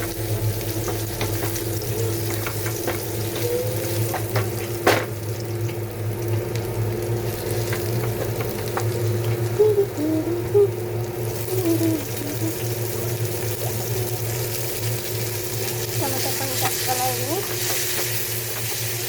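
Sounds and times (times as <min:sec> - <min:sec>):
onions sizzling in hot oil: 0:00.0 - 0:09.7, 0:10.8 - 0:19.0
low hum: 0:08.8 - 0:15.6.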